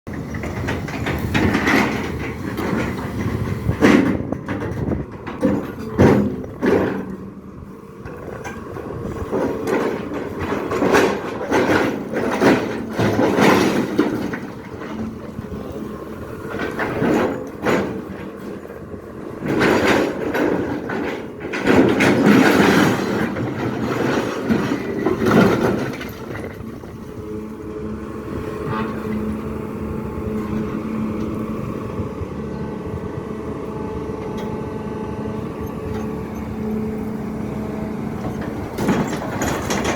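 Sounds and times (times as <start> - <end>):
loud knocks and scraping: 0.1 - 7.3, 8.0 - 27.4, 35.7 - 39.9
excavator engine under load: 0.1 - 39.9.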